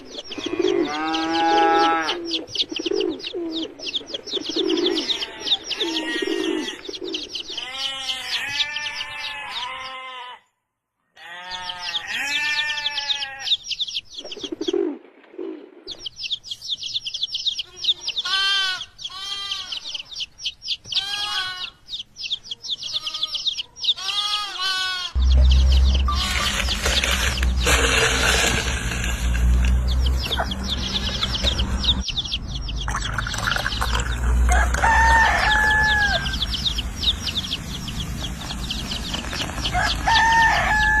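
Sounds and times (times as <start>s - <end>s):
bleat-like animal calls: 0.4s - 2.3s, 4.9s - 6.8s, 7.5s - 10.5s, 11.1s - 13.6s, 17.6s - 20.1s, 21.0s - 21.8s, 22.8s - 25.2s
fast high bird chirping: 25.1s - 34.3s, 35.3s - 40.9s
loud low sound: 25.2s - 32.0s.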